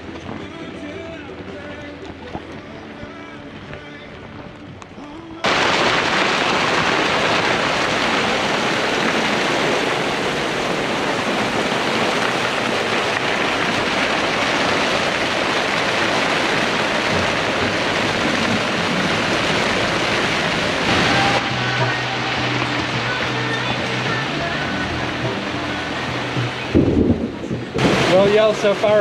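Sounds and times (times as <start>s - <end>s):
heavy rain on sailboat: 5.4s - 29.0s
strong wind gusting: 26.4s - 29.0s.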